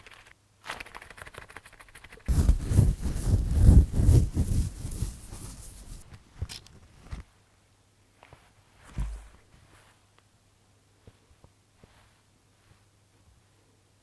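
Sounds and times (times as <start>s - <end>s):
scratching against skin: 0.7s - 6.1s.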